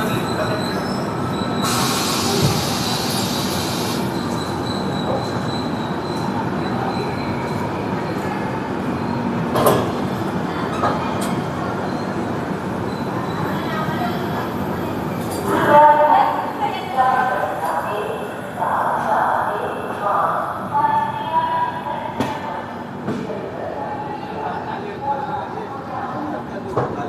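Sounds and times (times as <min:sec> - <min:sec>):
high wheel squeal: 0:00.0 - 0:07.7.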